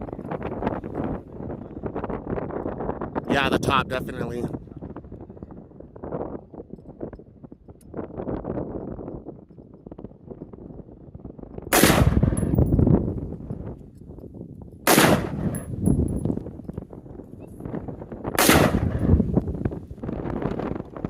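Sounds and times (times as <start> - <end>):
rifle shots: 11.7 - 12.7, 14.9 - 16.2, 18.4 - 19.3.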